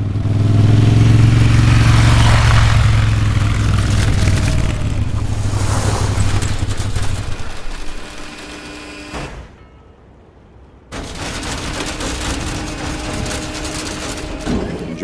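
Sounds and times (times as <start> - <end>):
motorcycle engine running: 0.0 - 8.5.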